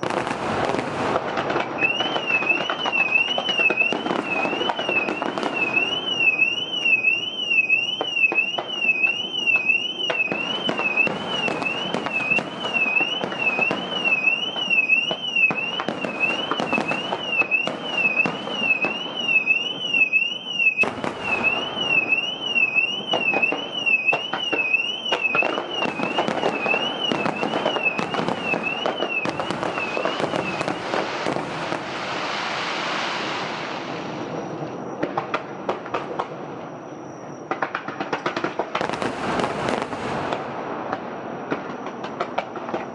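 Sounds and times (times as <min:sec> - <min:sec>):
fireworks crackling and booming: 0:00.0 - 0:42.9
car alarm warbling: 0:01.8 - 0:30.9.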